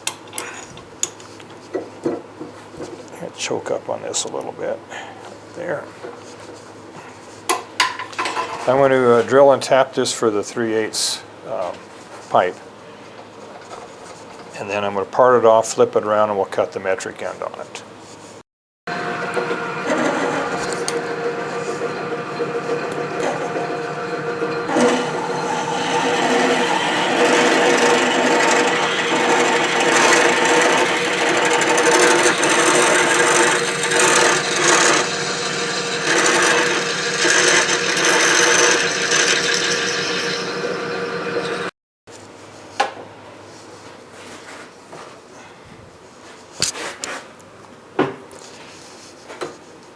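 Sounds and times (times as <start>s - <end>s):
drill bit cutting brass: 18.9s - 41.7s
metal lathe motor hum: 18.9s - 41.7s.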